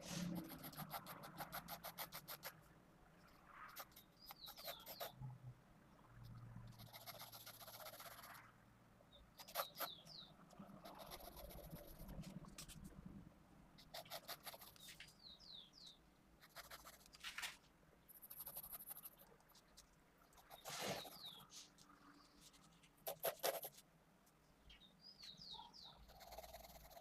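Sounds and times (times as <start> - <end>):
pencil scratching on paper: 0.0 - 2.6, 3.7 - 5.1, 6.7 - 8.4, 9.4 - 10.0, 10.8 - 12.8, 13.8 - 15.0, 16.4 - 17.4, 18.2 - 19.2, 20.4 - 23.8, 26.1 - 27.0.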